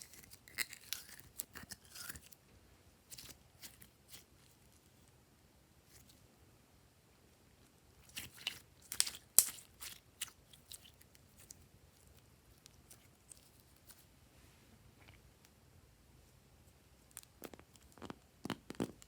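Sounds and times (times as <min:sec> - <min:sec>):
slime crackling and popping: 0:08.0 - 0:11.6, 0:17.1 - 0:19.0.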